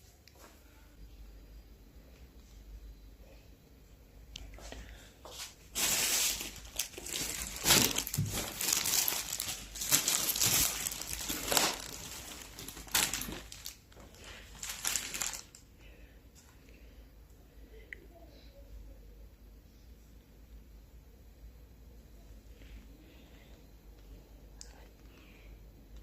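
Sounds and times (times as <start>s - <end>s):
food packaging crinkling: 5.7s - 15.7s.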